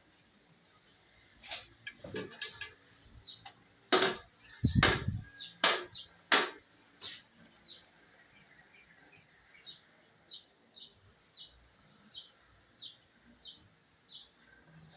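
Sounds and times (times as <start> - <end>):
irregular knocks and clicks: 3.4 - 6.6.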